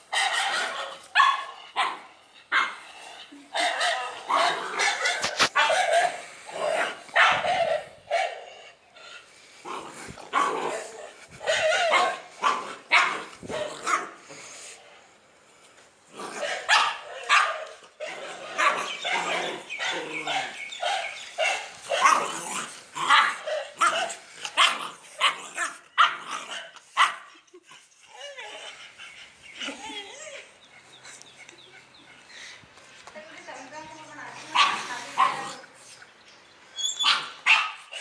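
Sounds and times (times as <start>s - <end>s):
dog barking: 0.1s - 2.0s, 3.6s - 8.5s, 11.4s - 14.1s, 16.4s - 17.8s, 18.5s - 22.4s, 26.0s - 27.2s, 34.4s - 35.7s, 37.0s - 38.0s.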